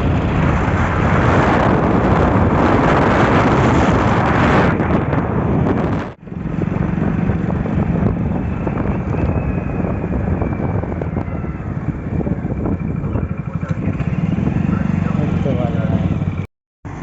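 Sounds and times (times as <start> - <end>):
wind noise on microphone: 0.0 - 16.4
diesel engine running: 0.0 - 17.0.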